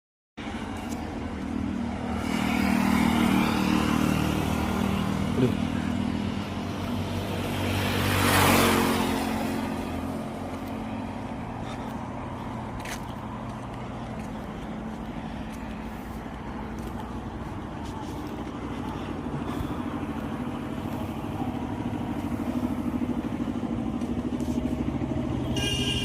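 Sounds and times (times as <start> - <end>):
truck engine running: 9.2 - 26.0.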